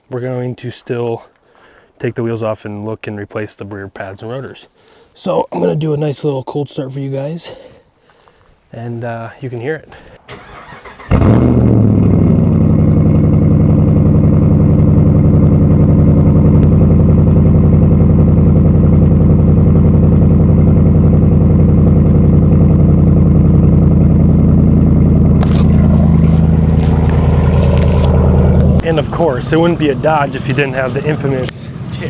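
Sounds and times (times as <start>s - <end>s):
engine ticking: 10.3s - 32.0s
truck engine cold start: 10.3s - 32.0s
engine idling loudly: 10.5s - 32.0s.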